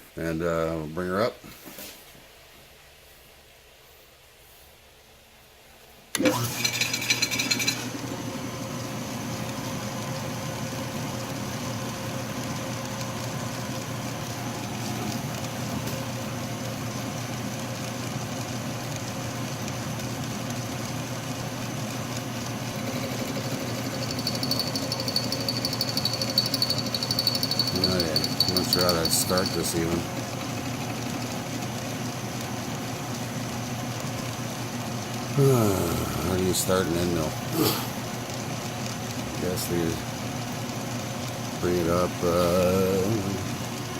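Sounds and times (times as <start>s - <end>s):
metal lathe running: 6.2s - 8.0s, 22.6s - 31.7s
high-pitched startup burst: 22.8s - 29.8s
high steady tone: 22.8s - 30.6s.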